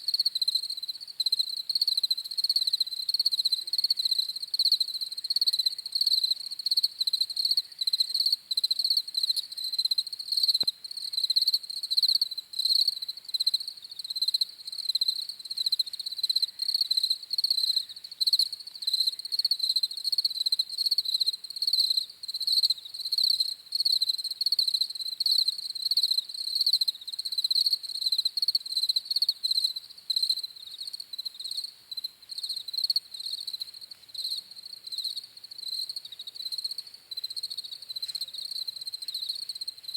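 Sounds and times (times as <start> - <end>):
crickets chirping: 0.1 - 39.9.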